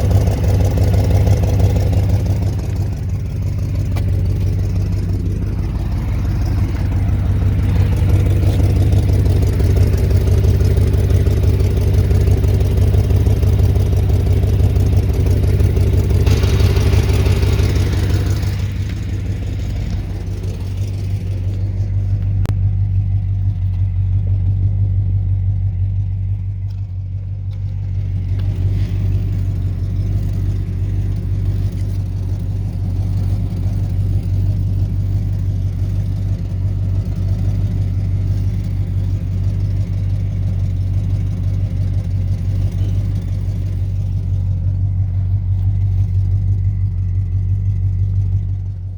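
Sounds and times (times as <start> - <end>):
exhaust leak hiss: 0.0 - 23.0
car engine droning: 0.0 - 48.9.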